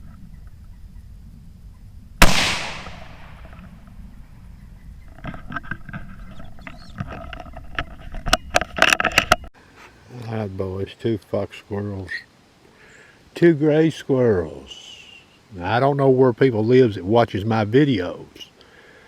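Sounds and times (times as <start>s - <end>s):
rifle shot with echo: 2.2s - 3.6s.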